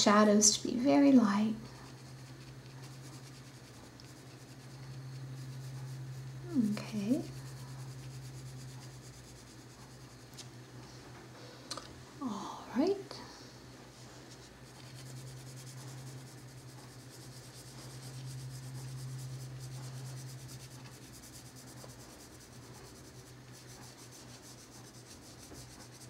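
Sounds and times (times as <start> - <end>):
colored pencil shading on paper: 1.7 - 10.4, 14.6 - 26.0.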